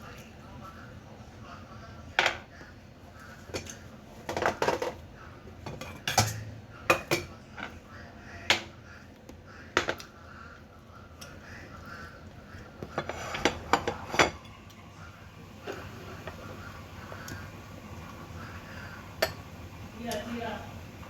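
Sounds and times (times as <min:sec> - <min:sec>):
cutlery clinking on plate: 0:05.7 - 0:07.3.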